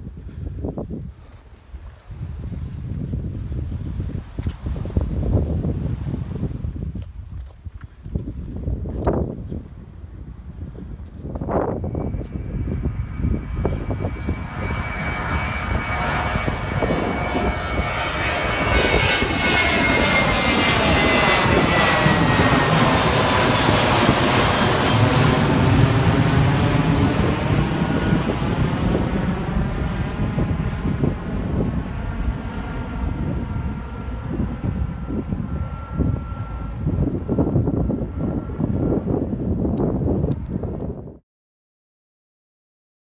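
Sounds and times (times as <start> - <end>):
airplane flying past: 8.6 - 41.2.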